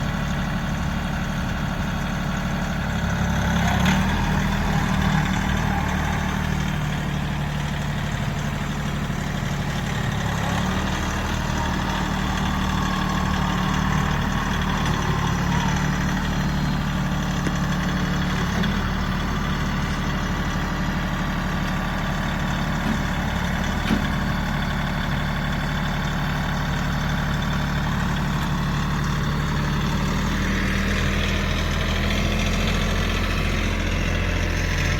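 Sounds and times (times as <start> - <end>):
diesel engine running: 0.0 - 34.9.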